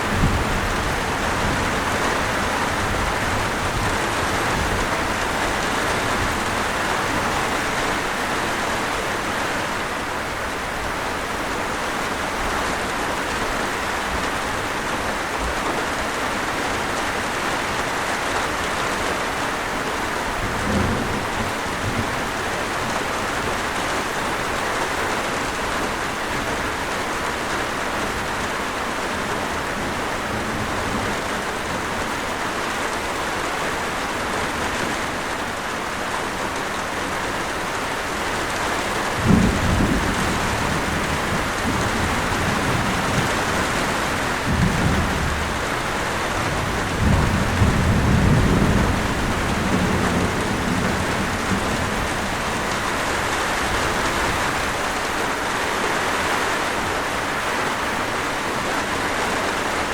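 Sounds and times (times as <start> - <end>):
thunder rumbles: 0.0 - 8.9, 20.4 - 23.6, 38.6 - 54.9
steady rain falling: 0.0 - 59.9.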